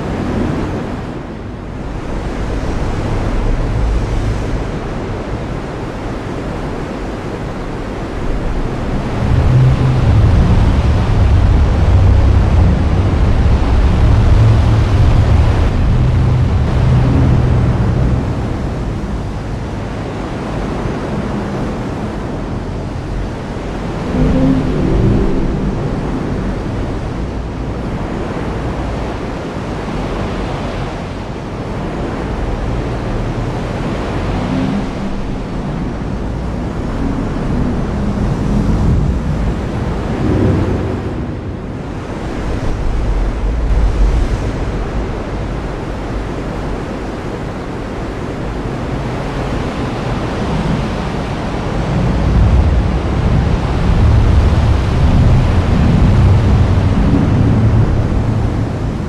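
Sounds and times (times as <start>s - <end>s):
low rumbles of thunder: 8.1s - 28.8s, 51.4s - 59.0s.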